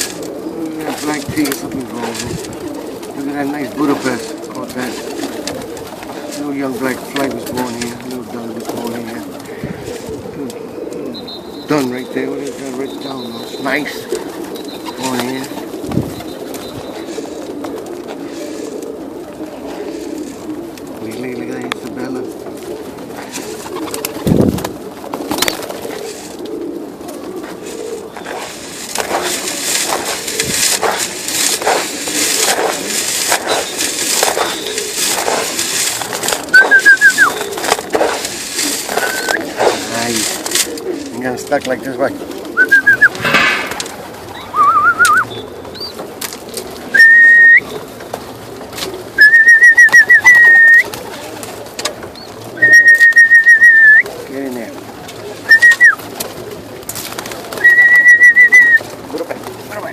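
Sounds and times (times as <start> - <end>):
birds rustling: 0.0 - 59.9
pigeons cooing: 0.0 - 59.9
person whistling calls: 36.5 - 37.4, 38.9 - 39.4, 42.6 - 43.3, 44.4 - 45.3, 46.9 - 47.6, 49.2 - 50.9, 52.6 - 54.0, 55.5 - 56.0, 57.6 - 58.8.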